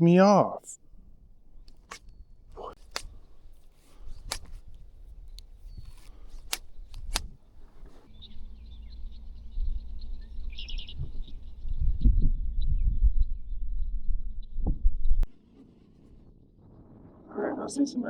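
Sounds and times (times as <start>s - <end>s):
small birds chirping: 0.6s - 12.0s
sharp clicks: 0.8s - 8.1s.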